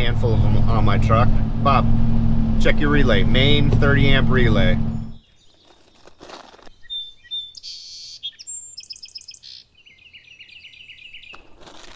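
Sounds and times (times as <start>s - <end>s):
small birds chirping: 3.1s - 11.6s.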